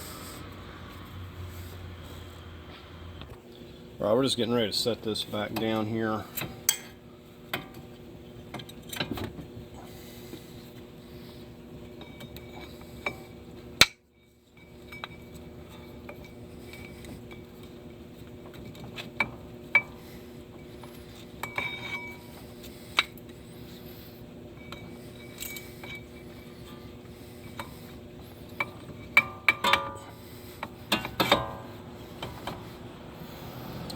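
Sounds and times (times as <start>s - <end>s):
steady background hum: 0.0s - 33.9s.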